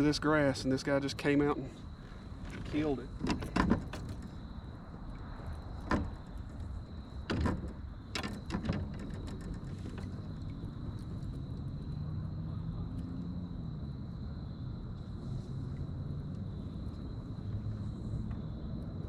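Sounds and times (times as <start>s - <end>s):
low steady rumble: 0.0s - 19.0s
sharp clicks and knocks: 2.5s - 4.3s, 5.7s - 10.3s.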